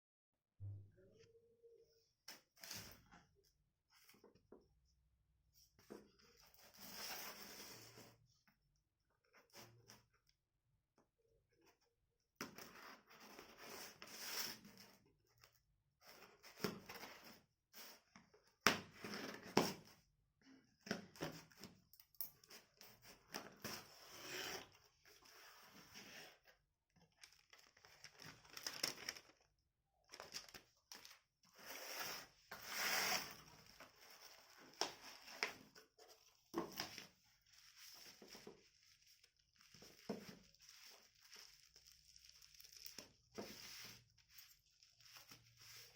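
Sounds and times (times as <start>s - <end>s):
plastic wrap and paper crinkling: 27.1s - 31.3s, 33.3s - 45.9s.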